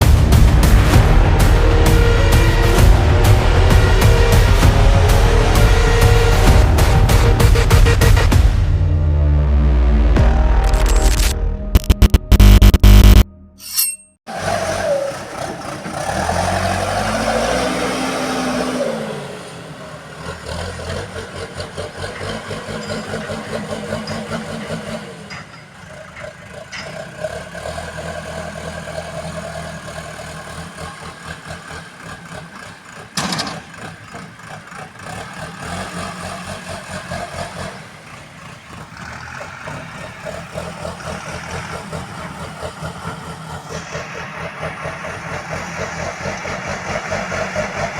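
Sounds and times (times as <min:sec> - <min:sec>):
diesel engine revving and running: 0:00.0 - 0:13.3, 0:14.3 - 0:47.9
sharp metal clank: 0:13.6 - 0:14.2, 0:33.2 - 0:33.8.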